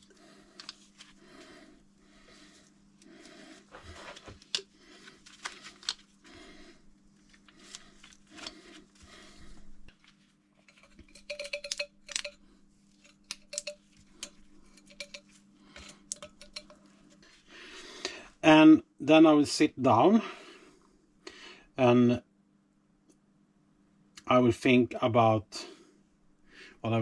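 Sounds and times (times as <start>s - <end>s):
faint steady hum: 0.0s - 27.0s
light metallic clicks and clinks: 10.6s - 12.4s, 13.0s - 16.9s
grease gun pumping: 13.0s - 15.2s.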